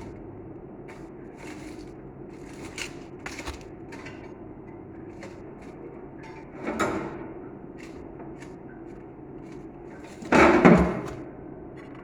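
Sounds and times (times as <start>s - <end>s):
rustling scrape: 0.0s - 4.4s, 7.7s - 12.0s
handling clicks and scrapes: 0.0s - 7.0s, 7.7s - 12.0s
steady low hum: 0.0s - 12.0s.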